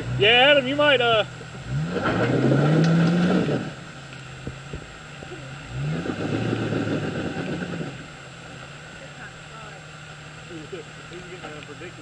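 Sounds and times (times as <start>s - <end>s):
engine revving under load: 0.0s - 4.0s, 5.5s - 8.3s.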